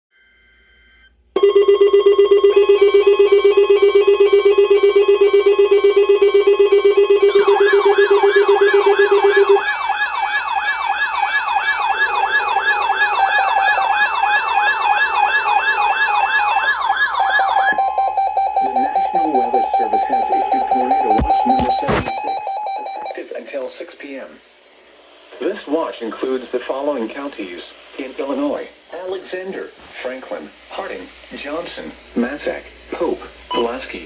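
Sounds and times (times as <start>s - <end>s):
steady alarm tones: 1.4s - 22.4s
fast yelp siren: 7.2s - 20.2s.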